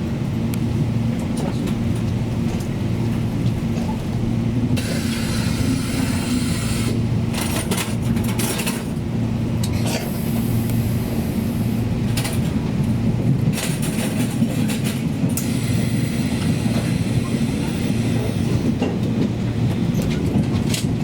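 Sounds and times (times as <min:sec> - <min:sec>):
train wheels rumbling on track: 0:00.0 - 0:21.0
hiss: 0:04.8 - 0:07.0.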